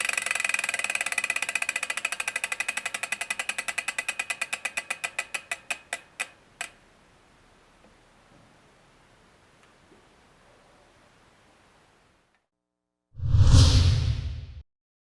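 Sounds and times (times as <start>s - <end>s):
bicycle freehub clicking: 0.0s - 6.8s.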